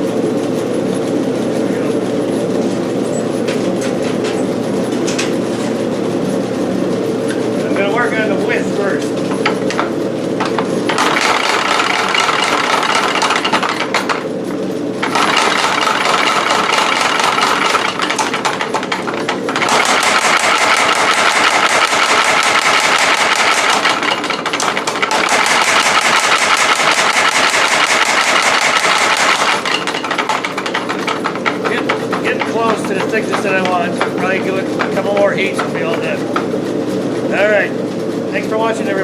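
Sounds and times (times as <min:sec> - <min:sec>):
power hammer striking hot steel: 0:15.0 - 0:36.5.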